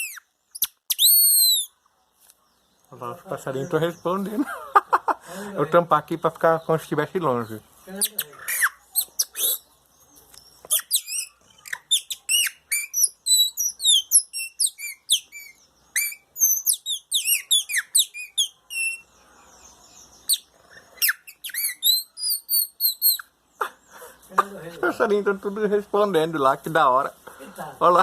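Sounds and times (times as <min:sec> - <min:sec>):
bird call imitation chirps: 0:00.0 - 0:01.8, 0:08.0 - 0:09.7, 0:10.6 - 0:19.1, 0:20.2 - 0:23.4.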